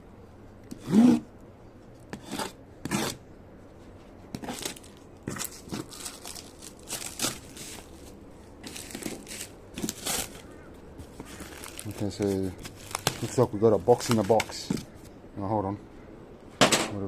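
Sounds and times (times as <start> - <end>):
knife cutting tape and cardboard: 0.7 - 1.2, 2.1 - 3.2, 4.3 - 7.9
cardboard rustling: 3.8 - 15.1.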